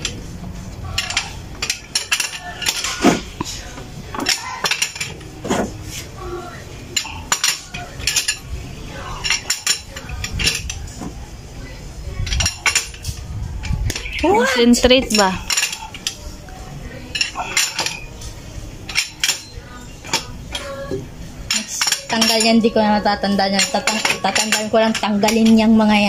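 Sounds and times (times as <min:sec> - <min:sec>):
metal tools clinking: 0:00.8 - 0:05.3, 0:07.0 - 0:08.4, 0:21.5 - 0:26.0.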